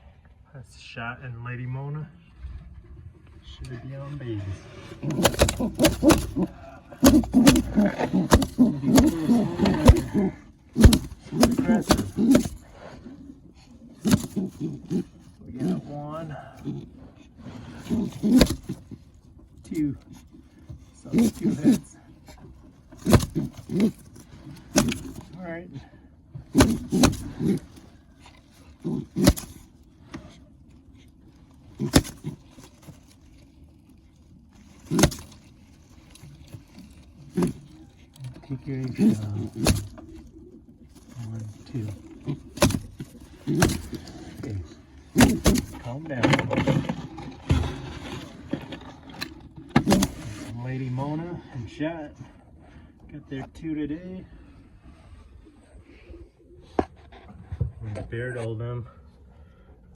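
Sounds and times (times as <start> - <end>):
faint rustling: 2.0 - 59.9
pigeon growling coos: 4.6 - 19.0, 20.0 - 30.5, 36.0 - 45.9
dull thumps: 4.8 - 51.0
sharp knocks or slaps: 5.1 - 10.2, 10.8 - 12.6, 17.8 - 18.8, 45.2 - 45.8.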